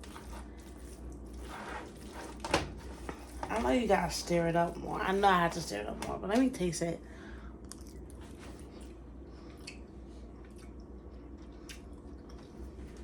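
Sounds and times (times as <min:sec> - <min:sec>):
quiet chewing: 0:07.6 - 0:13.0.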